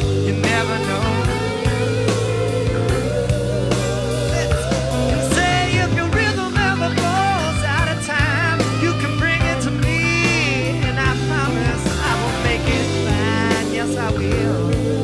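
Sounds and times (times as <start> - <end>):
rock song with sung vocal: 0.0 - 15.0.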